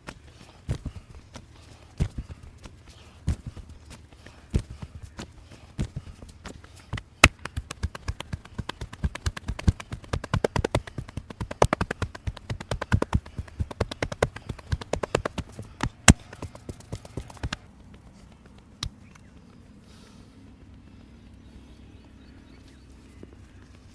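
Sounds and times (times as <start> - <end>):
hand slaps and taps on head: 6.9 - 17.6.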